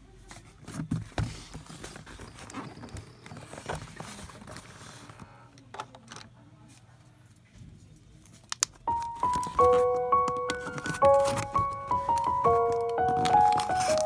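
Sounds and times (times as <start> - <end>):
music with sustained notes: 8.9 - 14.0.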